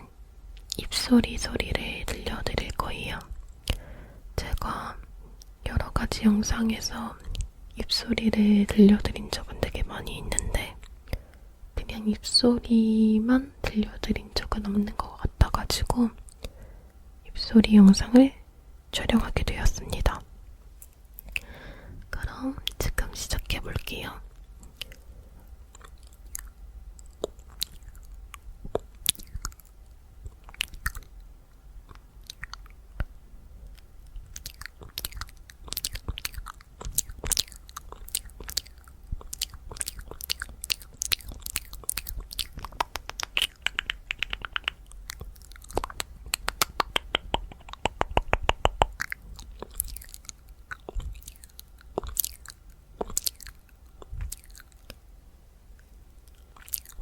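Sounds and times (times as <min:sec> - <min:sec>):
wet mouth clicks and smacks: 0:03.6 - 0:03.8, 0:25.7 - 0:31.1, 0:31.9 - 0:55.0, 0:55.8 - 0:57.0.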